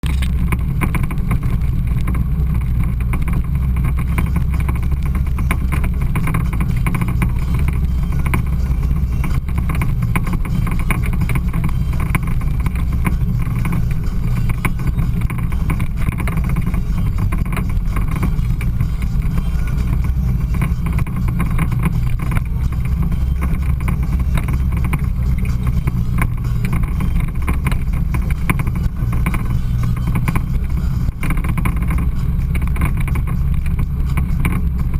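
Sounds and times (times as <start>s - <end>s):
off-road vehicle engine running: 0.0s - 34.9s.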